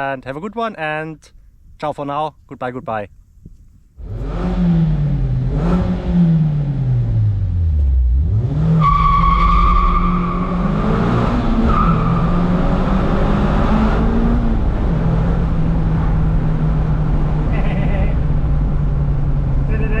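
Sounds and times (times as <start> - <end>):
sports car engine revving: 4.0 - 19.7.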